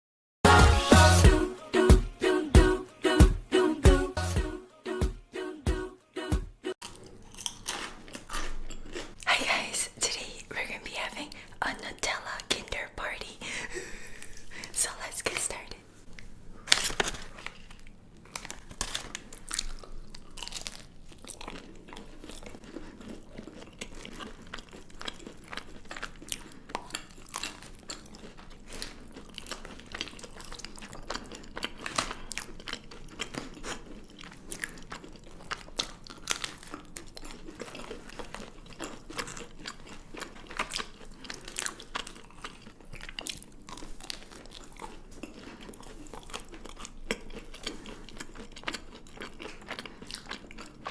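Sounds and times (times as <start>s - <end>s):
chocolate crunching: 6.8s - 9.7s, 16.6s - 50.9s
wet chewing: 6.8s - 9.7s, 17.0s - 50.9s.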